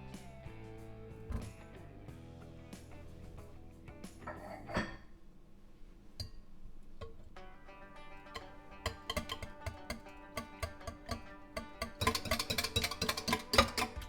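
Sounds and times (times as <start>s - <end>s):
plucked string music with percussion: 0.0s - 4.7s, 6.2s - 14.0s
sharp taps and clicks: 8.3s - 14.0s.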